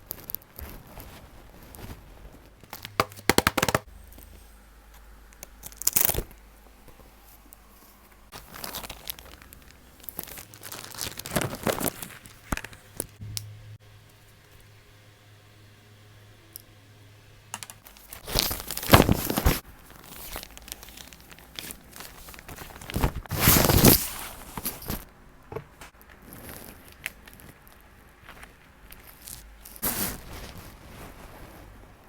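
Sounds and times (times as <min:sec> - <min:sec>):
packaging tearing and crinkling: 0:00.0 - 0:03.9, 0:05.6 - 0:06.4, 0:08.4 - 0:13.1, 0:17.8 - 0:25.0.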